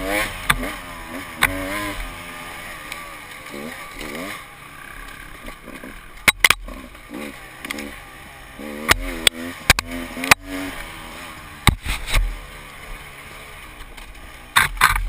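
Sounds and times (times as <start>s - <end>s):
motorcycle engine revving: 0.0s - 15.0s
sharp knocks and clatters: 13.9s - 15.0s.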